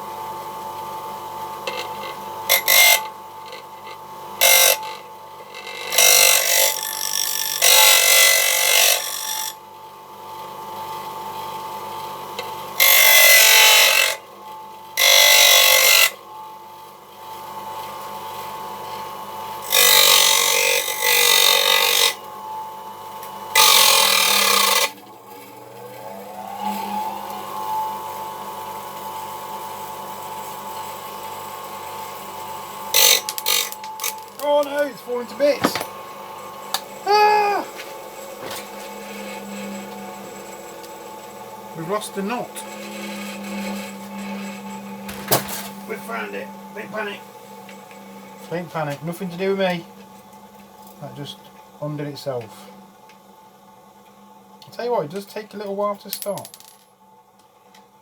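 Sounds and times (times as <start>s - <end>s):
bench grinder whining: 0.0s - 56.8s
chisel grinding on wheel: 1.6s - 9.6s, 12.8s - 14.2s, 15.0s - 16.2s, 19.6s - 22.2s, 23.5s - 25.0s, 32.9s - 36.0s, 38.4s - 45.2s.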